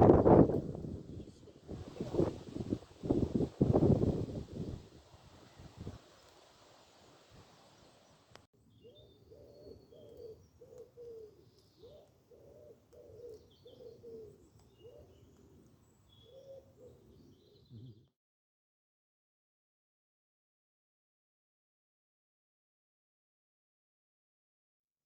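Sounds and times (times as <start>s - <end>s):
noise hiss: 1.0s - 8.5s
small birds chirping: 4.5s - 18.1s
bird cooing: 8.8s - 15.4s, 16.2s - 18.1s.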